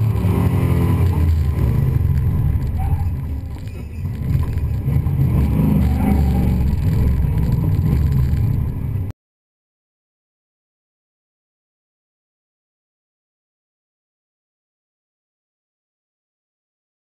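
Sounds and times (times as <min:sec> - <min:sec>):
car engine revving hard: 0:00.0 - 0:08.6.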